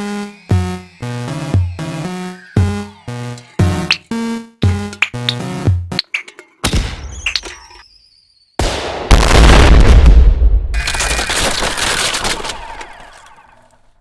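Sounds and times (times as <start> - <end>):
explosion with deep rumble: 8.6 - 10.8.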